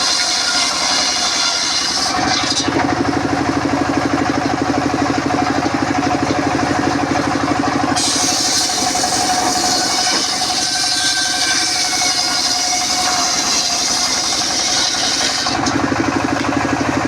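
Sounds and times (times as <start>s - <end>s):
sawmill engine pulsing: 0.0s - 17.0s
saw blade hissing through wood: 8.0s - 15.6s.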